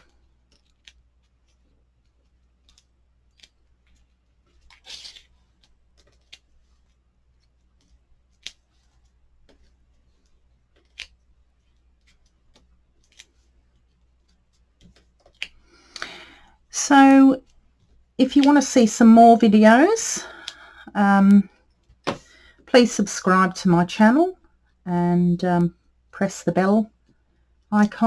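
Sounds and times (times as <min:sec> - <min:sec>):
small clicks and taps: 0:00.5 - 0:13.5
paper tearing rustle: 0:04.7 - 0:05.4.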